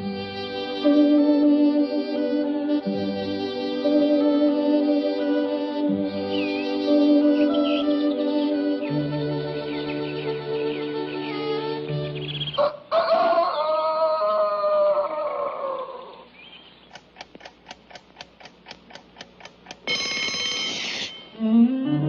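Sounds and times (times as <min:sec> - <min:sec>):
cartoon music: 0:00.8 - 0:12.6
clock ticking: 0:16.9 - 0:21.4
alarm clock bell ringing: 0:19.8 - 0:21.4.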